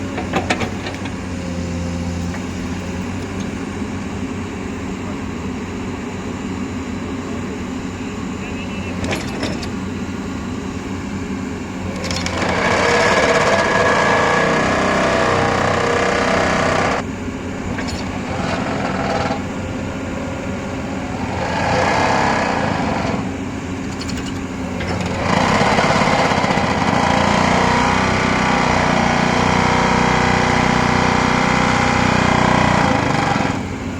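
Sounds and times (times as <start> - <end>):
hydraulic pile driver hammering: 0.0 - 1.6, 8.9 - 10.1, 11.8 - 33.9
excavator engine running: 0.0 - 33.9.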